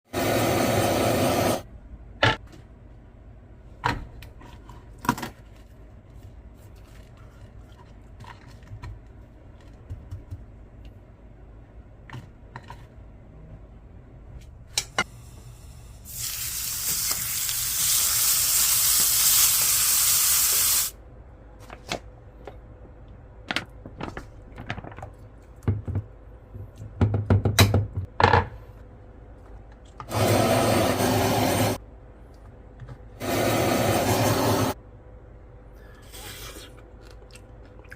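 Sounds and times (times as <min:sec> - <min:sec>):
loud sizzling hiss: 0:15.5 - 0:20.9.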